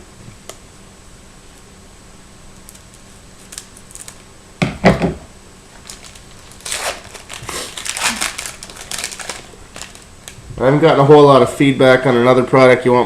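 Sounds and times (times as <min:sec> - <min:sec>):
wrapper crinkling and tearing: 0:02.7 - 0:04.3, 0:05.7 - 0:10.4.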